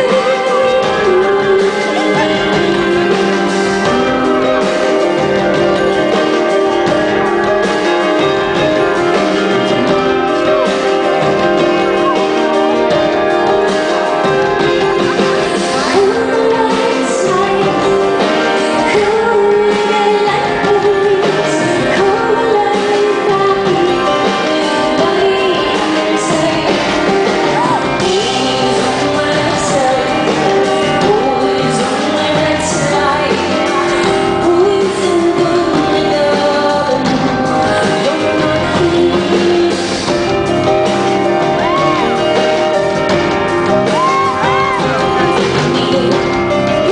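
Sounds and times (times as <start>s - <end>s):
woman singing: 0.0s - 42.5s, 43.8s - 46.9s
live pop-rock band playing: 0.0s - 46.9s.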